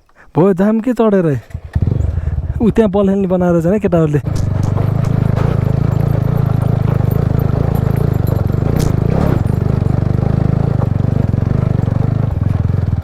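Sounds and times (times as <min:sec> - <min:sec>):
motorcycle engine running at low revs: 0:01.5 - 0:13.0
brief clatter: 0:04.2 - 0:10.1.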